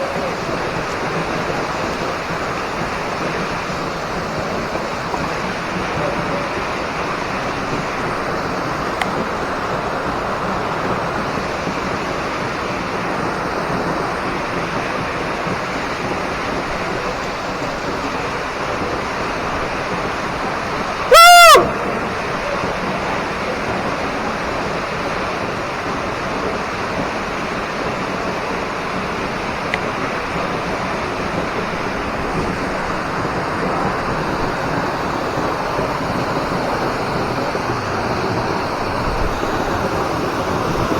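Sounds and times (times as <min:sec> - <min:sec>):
waterfall rushing: 0:00.0 - 0:40.9
high call rising and falling: 0:21.1 - 0:22.3.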